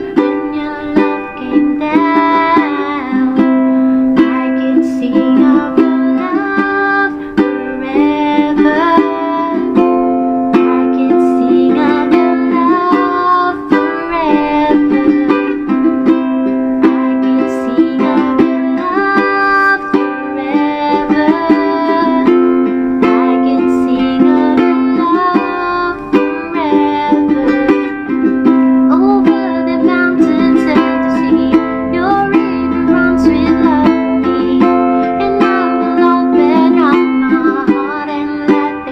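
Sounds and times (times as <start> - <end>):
ukulele playing a tune: 0.0 - 38.9.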